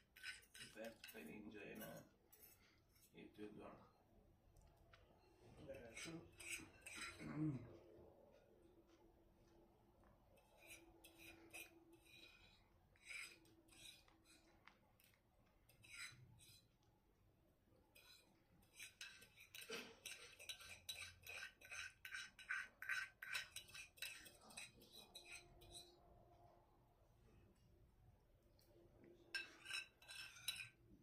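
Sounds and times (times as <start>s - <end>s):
cutlery clinking on a plate: 18.0s - 25.9s, 29.3s - 30.8s.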